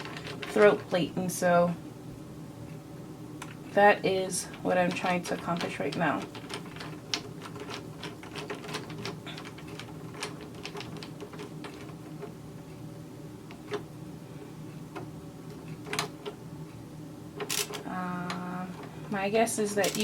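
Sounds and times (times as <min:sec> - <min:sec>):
metal parts clicking and tapping: 0:00.0 - 0:01.0, 0:04.5 - 0:12.4, 0:15.0 - 0:16.4, 0:17.4 - 0:20.0
faint steady hum: 0:00.0 - 0:20.0.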